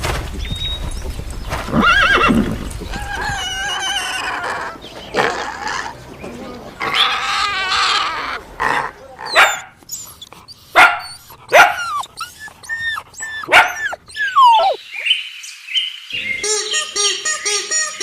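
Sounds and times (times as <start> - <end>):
dog barking: 9.3 - 9.8, 10.7 - 12.1, 13.4 - 14.8.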